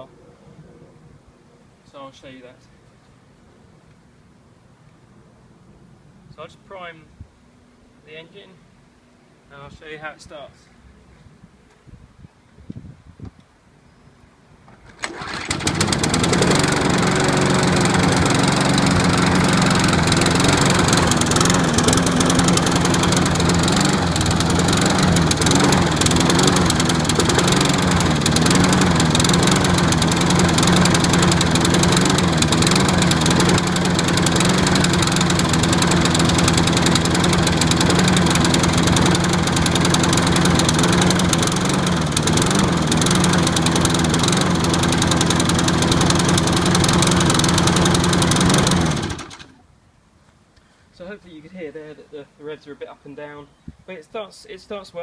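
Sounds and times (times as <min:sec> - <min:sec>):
lawn mower engine running roughly: 0:14.7 - 0:49.6.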